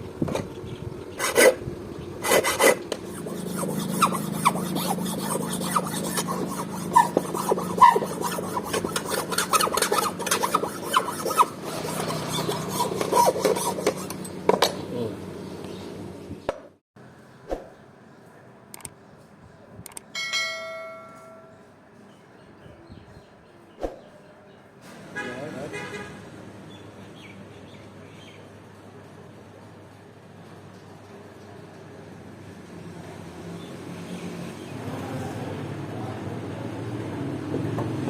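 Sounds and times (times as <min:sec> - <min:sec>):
knife scraping on sharpening stone: 0:02.3 - 0:14.4
short ringing tone: 0:20.1 - 0:21.7.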